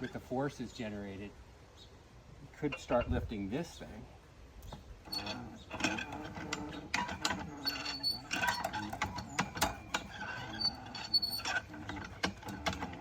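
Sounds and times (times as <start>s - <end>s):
high metal squeaks: 4.7s - 13.0s.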